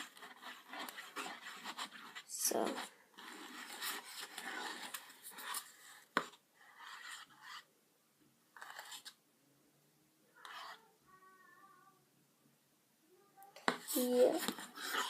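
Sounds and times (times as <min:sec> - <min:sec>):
scratchy handling noises: 0:00.0 - 0:07.7, 0:08.6 - 0:09.2, 0:13.6 - 0:15.0.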